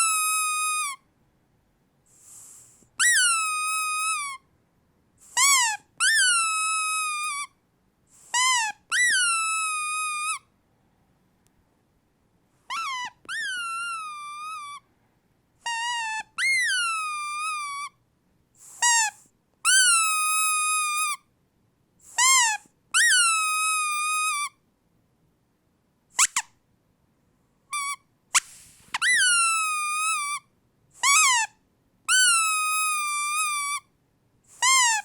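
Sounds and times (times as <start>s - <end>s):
dog toy squeaking: 0.0s - 1.0s, 2.2s - 4.4s, 5.2s - 7.6s, 8.2s - 10.5s, 12.7s - 14.8s, 15.6s - 18.0s, 18.6s - 21.2s, 22.0s - 24.6s, 26.1s - 26.6s, 27.7s - 33.9s, 34.5s - 35.0s.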